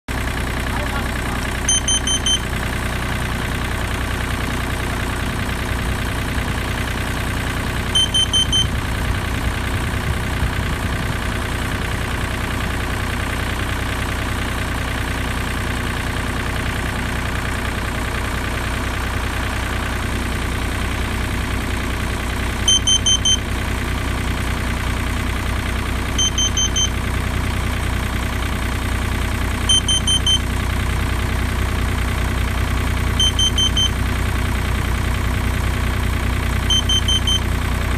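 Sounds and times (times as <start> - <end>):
alarm beeping high-pitched: 1.0 - 2.5, 8.0 - 8.7, 22.7 - 23.4, 26.2 - 26.9, 29.7 - 30.4, 33.2 - 34.0, 36.7 - 37.4.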